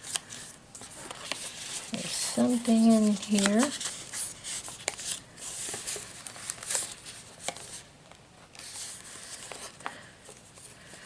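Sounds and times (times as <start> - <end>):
paper rustling and scraping: 0.0 - 7.9, 8.5 - 10.7.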